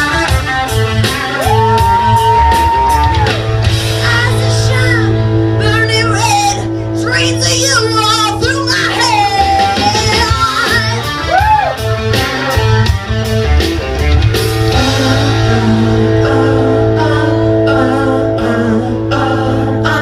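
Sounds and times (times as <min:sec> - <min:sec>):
rock music with guitar and drums: 0:00.0 - 0:20.0
person singing: 0:14.7 - 0:20.0.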